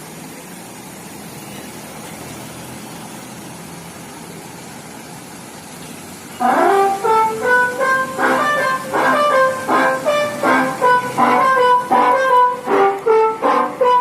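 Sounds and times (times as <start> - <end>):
bus engine idling: 0.0 - 14.0
musical horn melody: 6.4 - 14.0.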